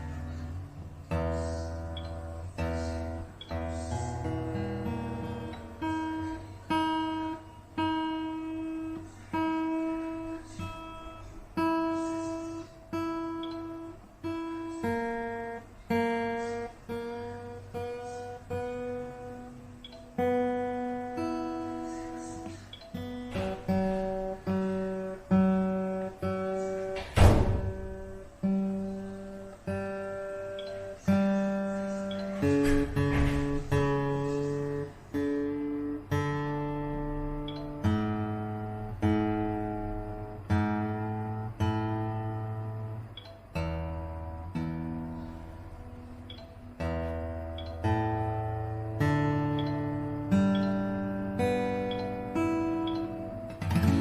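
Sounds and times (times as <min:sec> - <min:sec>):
acoustic guitar picked melody: 0:00.0 - 0:54.0.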